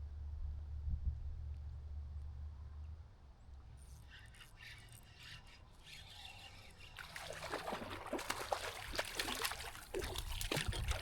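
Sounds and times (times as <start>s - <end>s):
water splashing and dribbling: 6.0s - 11.0s.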